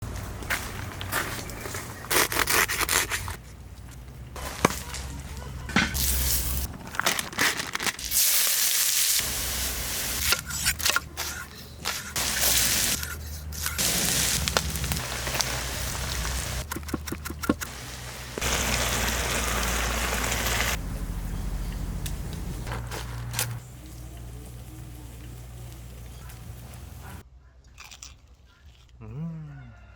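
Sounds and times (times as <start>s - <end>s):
meat sizzling in a pan: 8.2s - 10.3s, 13.8s - 16.6s, 17.7s - 20.8s.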